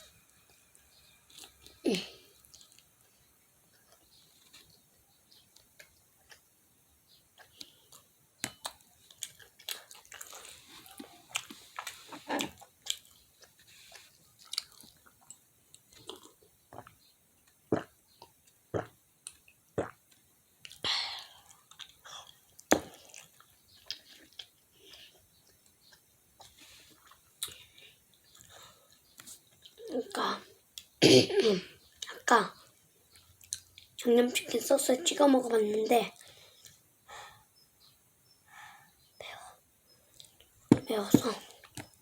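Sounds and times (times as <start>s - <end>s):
crunching and chewing fried chicken: 2.4s - 29.8s, 33.0s - 34.0s.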